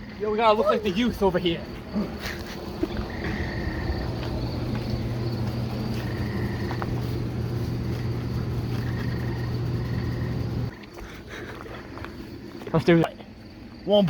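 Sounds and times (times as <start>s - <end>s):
low engine hum: 1.5s - 11.0s.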